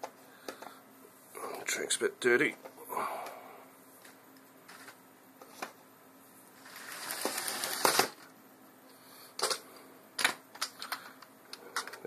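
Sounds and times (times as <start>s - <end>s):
toy train wheels clicking: 6.6s - 8.1s.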